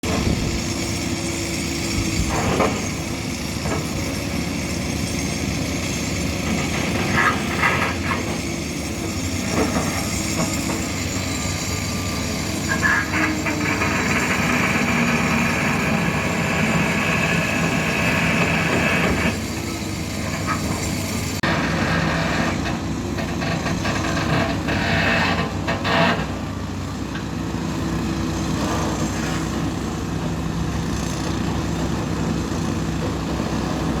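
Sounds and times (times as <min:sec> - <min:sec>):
excavator diesel engines under load: 0:00.0 - 0:34.0
high-pitched hydraulic strain: 0:06.7 - 0:26.2.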